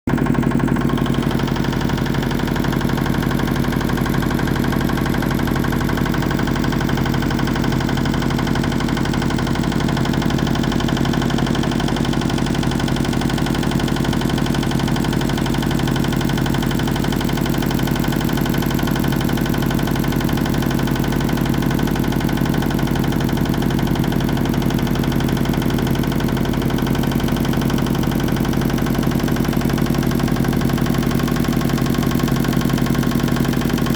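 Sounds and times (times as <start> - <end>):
motorboat engine running: 0.1 - 33.9.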